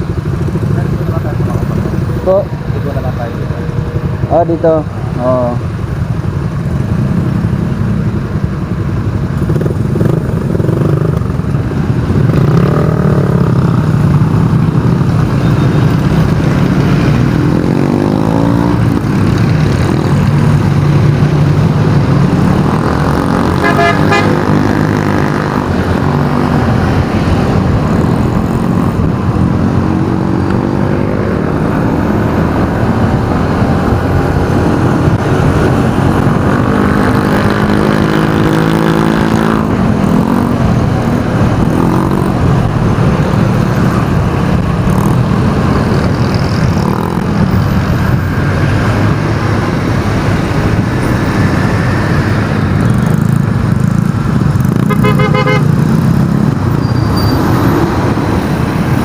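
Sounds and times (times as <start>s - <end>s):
car and motorcycle engines passing: 0.0s - 59.0s
vehicle horn toot: 23.6s - 24.4s, 54.9s - 55.7s.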